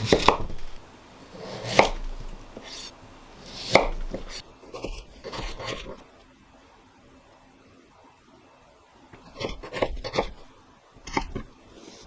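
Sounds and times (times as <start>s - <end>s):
knife chopping on cutting board: 0.0s - 6.0s.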